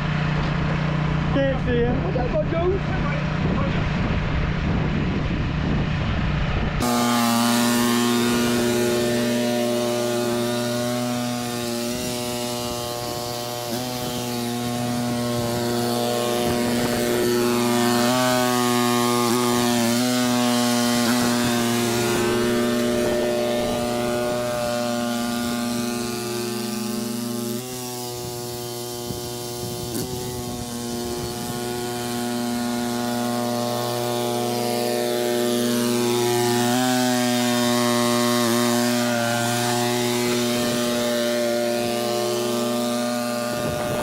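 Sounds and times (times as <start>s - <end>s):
snow blower engine running: 0.0s - 44.0s.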